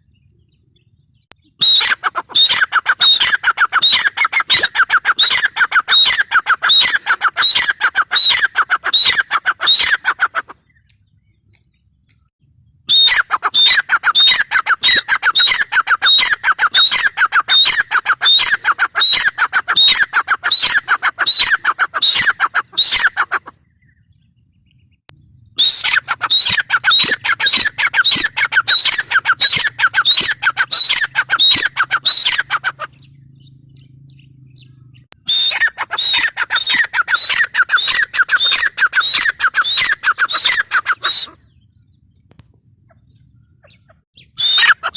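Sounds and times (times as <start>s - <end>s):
francolin calling: 1.4s - 10.5s, 25.6s - 41.6s.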